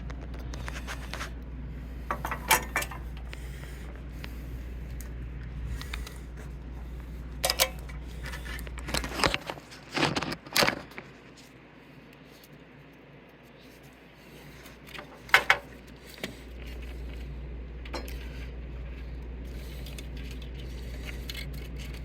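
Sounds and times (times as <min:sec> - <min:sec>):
low steady hum: 0:00.0 - 0:22.0
printer parts clicking and scraping: 0:02.0 - 0:04.4, 0:05.0 - 0:11.6, 0:12.2 - 0:17.3, 0:19.5 - 0:22.0.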